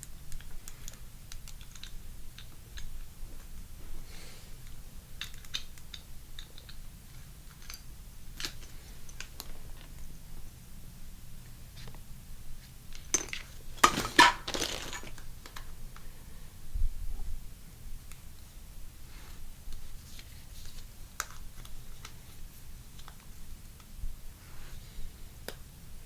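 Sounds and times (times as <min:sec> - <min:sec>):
plastic parts clicking and tapping: 0:04.6 - 0:07.8.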